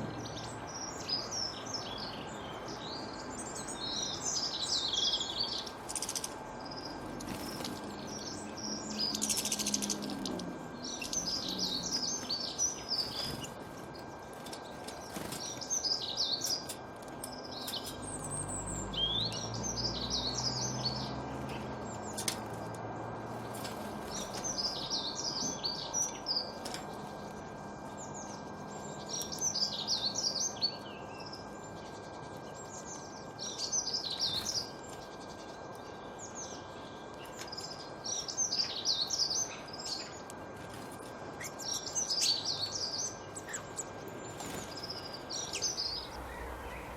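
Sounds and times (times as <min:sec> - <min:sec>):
birds twittering: 0:00.0 - 0:46.9
steady background hiss: 0:31.7 - 0:46.9
low rumble: 0:45.8 - 0:46.9.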